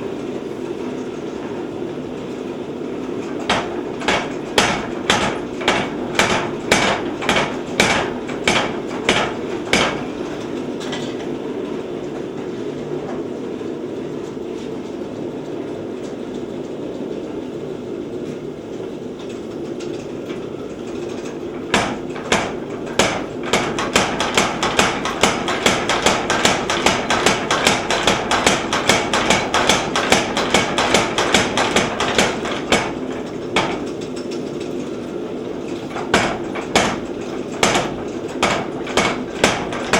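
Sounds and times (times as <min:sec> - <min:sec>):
machine hum: 0:00.0 - 0:13.7, 0:20.3 - 0:39.9
trip hammer pounding hot steel: 0:03.2 - 0:11.0, 0:20.9 - 0:34.6, 0:35.7 - 0:39.9.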